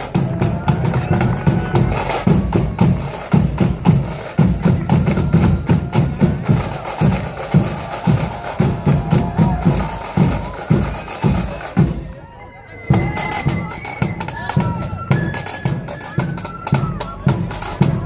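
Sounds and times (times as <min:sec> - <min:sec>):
bass drum beating: 0:00.0 - 0:12.0
snare drums beating a march: 0:00.0 - 0:12.1, 0:12.9 - 0:18.0
faint flutes: 0:04.6 - 0:18.0.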